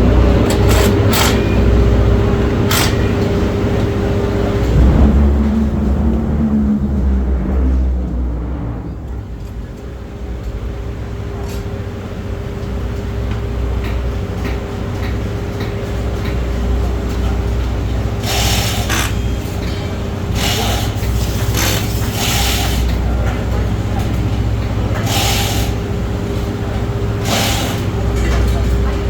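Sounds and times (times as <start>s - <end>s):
pneumatic tool bursts: 0.6s - 1.5s, 2.7s - 3.1s, 18.2s - 19.2s, 25.1s - 25.8s
steady low hum: 2.0s - 11.4s.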